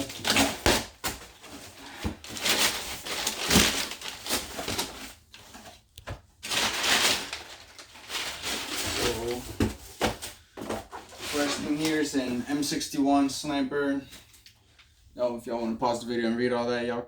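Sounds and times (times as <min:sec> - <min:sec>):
cardboard box rustling and scraping: 0:06.4 - 0:12.4.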